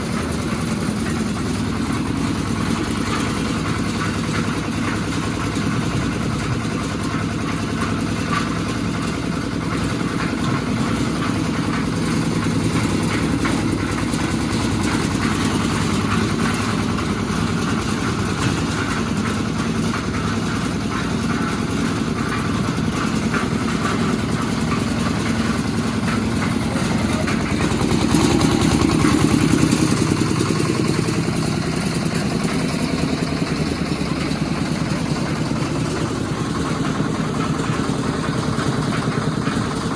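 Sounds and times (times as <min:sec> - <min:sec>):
engine idling: 0:00.0 - 0:39.9.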